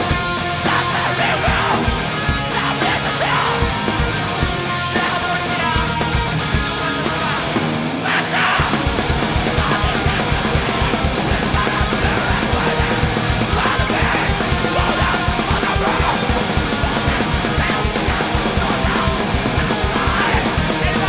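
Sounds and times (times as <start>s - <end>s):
bass guitar: 0.0s - 21.0s
distorted electric guitars: 0.0s - 21.0s
shouted vocals: 0.0s - 21.0s
pounding drums: 8.6s - 21.0s.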